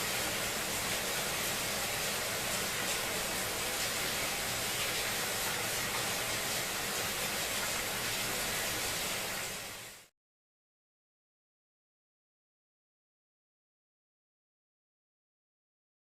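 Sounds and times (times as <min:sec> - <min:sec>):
steady rain hiss: 0:00.0 - 0:10.1.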